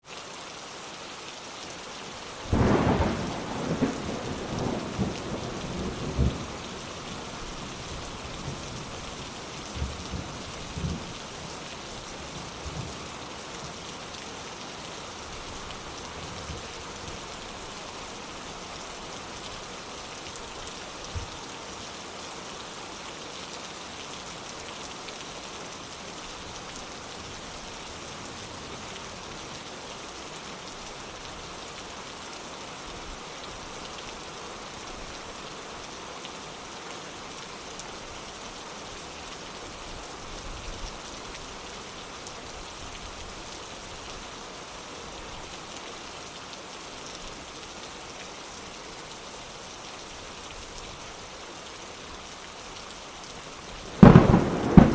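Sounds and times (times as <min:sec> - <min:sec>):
heavy rain hissing: 0:01.4 - 0:22.8, 0:51.0 - 0:54.9
thunder: 0:02.5 - 0:06.5, 0:54.0 - 0:54.9.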